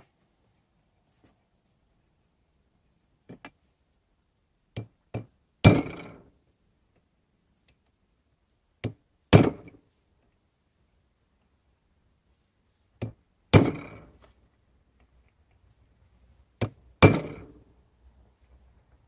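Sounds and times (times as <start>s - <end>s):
hammer striking a chisel: 5.7s - 6.2s, 8.8s - 9.8s, 13.5s - 14.1s, 16.6s - 17.5s.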